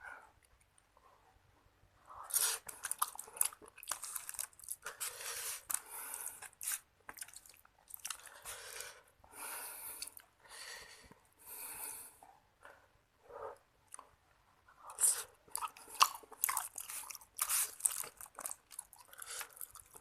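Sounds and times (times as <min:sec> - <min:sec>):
chewing crackers: 0:02.3 - 0:09.0, 0:14.9 - 0:20.0.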